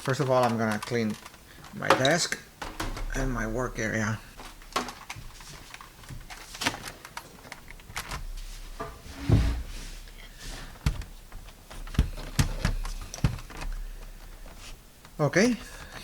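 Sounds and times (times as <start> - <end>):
heavy thump: 2.6 - 4.8.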